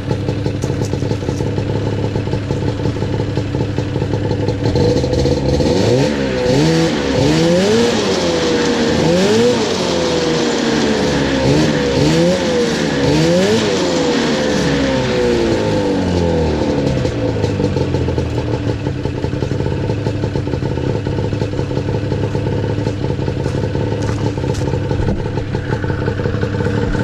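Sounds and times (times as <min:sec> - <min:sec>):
snowmobile engine revving: 0:04.5 - 0:18.8, 0:22.8 - 0:27.0.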